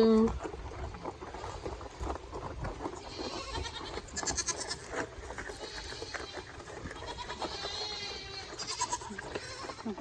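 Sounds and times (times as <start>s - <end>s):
rustling: 0.0s - 10.0s
goats bleating: 2.9s - 10.0s.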